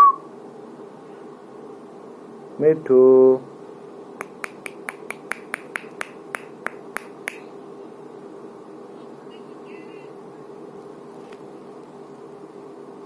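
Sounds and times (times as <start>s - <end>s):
faint steady hum: 0.0s - 13.0s
sharp clicks: 4.2s - 7.4s.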